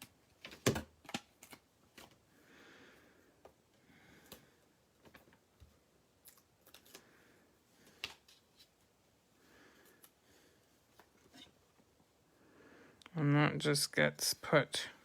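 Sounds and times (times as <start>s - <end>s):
clicks and taps of paper pieces: 0.0s - 2.2s.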